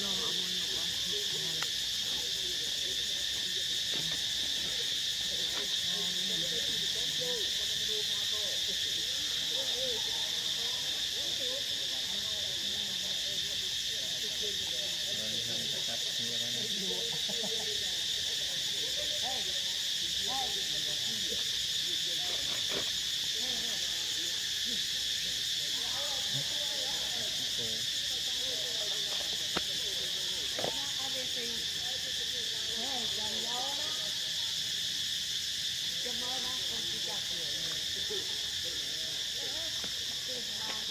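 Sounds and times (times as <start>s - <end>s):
insect chorus: 0.0s - 40.9s.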